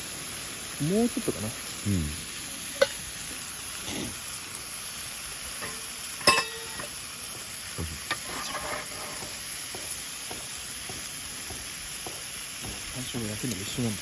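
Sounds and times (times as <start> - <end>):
meat sizzling on a griddle: 0.0 - 14.0.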